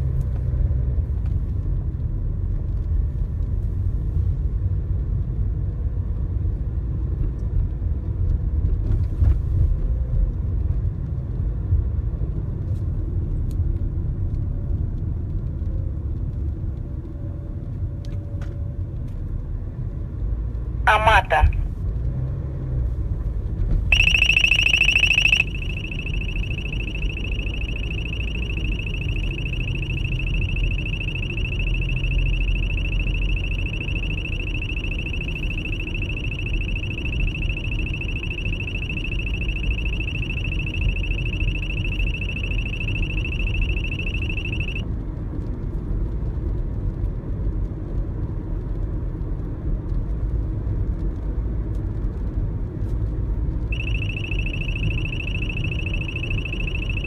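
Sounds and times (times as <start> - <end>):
radar detector alert tone: 20.9 - 21.6, 23.9 - 44.8, 53.7 - 57.0.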